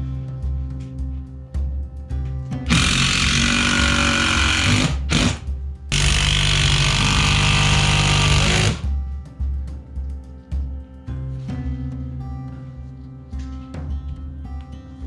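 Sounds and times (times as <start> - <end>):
background music: 0.0 - 15.0
power tool running: 2.7 - 8.8.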